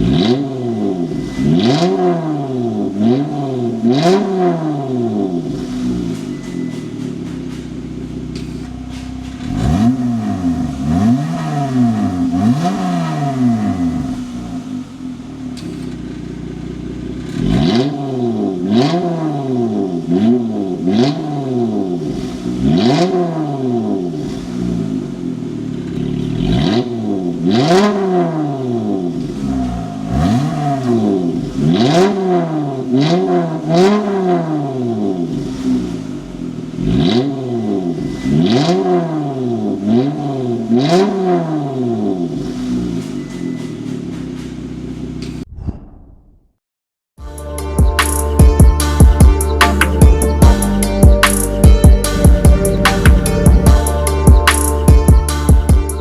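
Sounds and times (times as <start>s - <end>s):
car engine revving: 0.0s - 45.5s, 49.8s - 55.0s
car engine idling: 5.1s - 17.6s, 23.8s - 27.5s, 28.5s - 33.0s, 34.7s - 38.4s, 50.1s - 54.6s.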